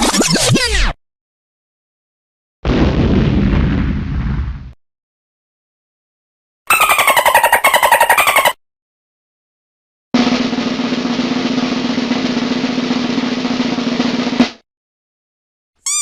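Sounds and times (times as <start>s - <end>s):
snare drum roll: 10.2s - 14.6s.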